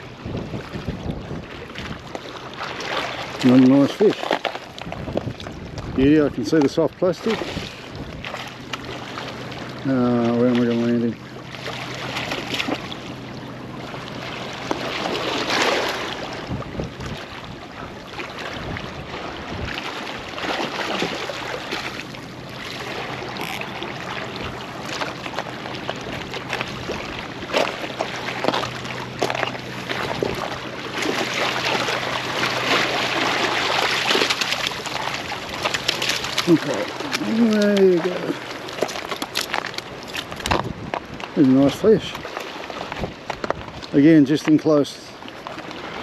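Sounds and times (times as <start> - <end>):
wind buffeting microphone: 0.0 - 2.2, 4.8 - 8.4, 15.5 - 21.8, 40.2 - 43.9
water sloshing and splashing: 0.0 - 46.0.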